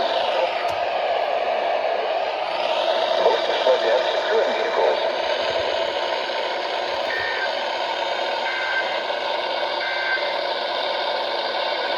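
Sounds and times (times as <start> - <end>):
radio hiss: 3.2 - 5.2.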